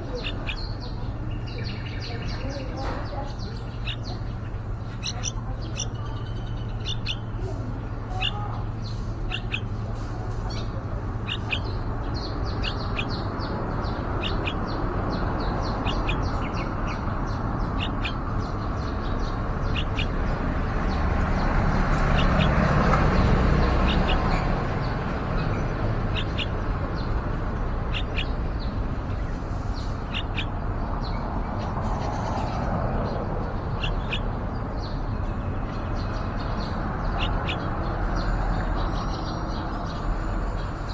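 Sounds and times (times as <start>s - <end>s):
birds chirping: 0.0s - 40.9s.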